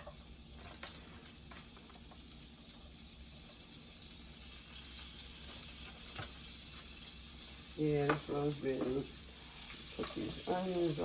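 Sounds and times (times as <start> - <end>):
butter sizzling in a skillet: 0.0 - 11.0.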